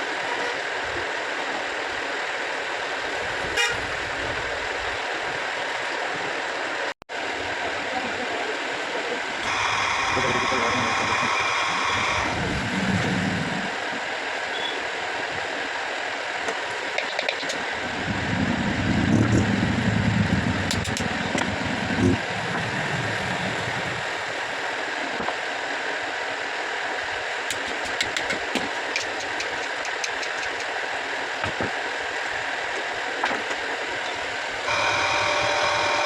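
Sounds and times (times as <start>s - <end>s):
electric water pump motor: 9.4s - 25.7s, 27.0s - 36.0s.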